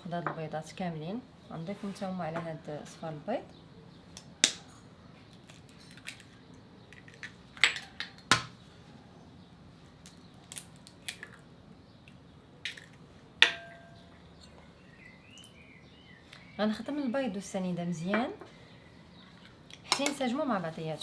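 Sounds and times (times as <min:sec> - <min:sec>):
eggs cracked against bowl: 0:04.2 - 0:04.7, 0:06.9 - 0:08.6, 0:10.0 - 0:11.4, 0:12.1 - 0:13.8
shells and dishes clinking: 0:12.7 - 0:14.0.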